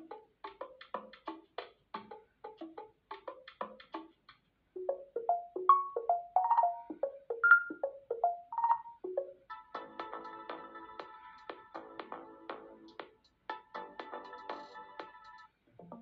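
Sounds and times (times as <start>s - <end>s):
mallet-like melody: 4.8s - 9.4s
tone with held notes: 4.8s - 11.0s
ringtone melodies: 4.8s - 16.0s.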